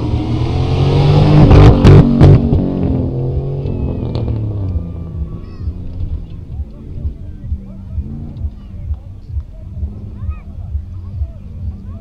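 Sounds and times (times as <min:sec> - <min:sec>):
engine revving hard: 0:00.0 - 0:04.6.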